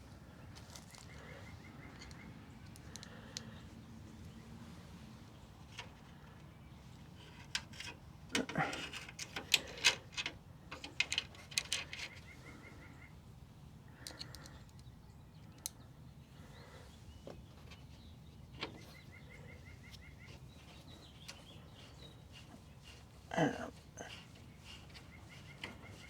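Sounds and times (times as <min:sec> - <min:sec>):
birds chirping faintly: 0:00.0 - 0:26.0
metal hardware clicking and knocking: 0:07.4 - 0:12.2.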